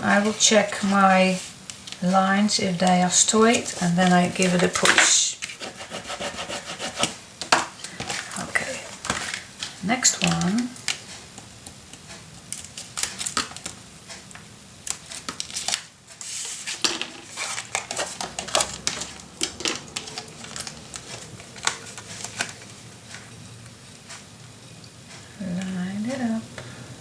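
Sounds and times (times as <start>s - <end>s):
paper rustling: 0.1s - 11.1s, 14.9s - 23.3s.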